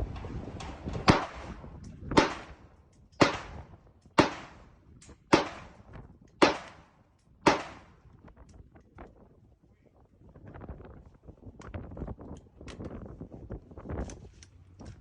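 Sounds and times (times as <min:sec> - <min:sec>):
gunshots: 0:00.7 - 0:04.7, 0:05.3 - 0:08.0
gunshot echo: 0:01.0 - 0:02.6, 0:03.2 - 0:08.0.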